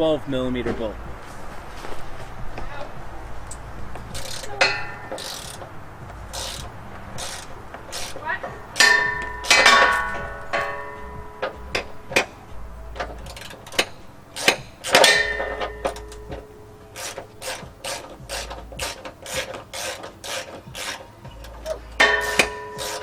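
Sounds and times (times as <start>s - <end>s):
ratchet wrench clicking: 3.5s - 12.3s, 13.0s - 23.0s
ringing metallic clink: 4.4s - 5.6s, 8.8s - 12.3s, 13.2s - 17.2s, 21.4s - 23.0s.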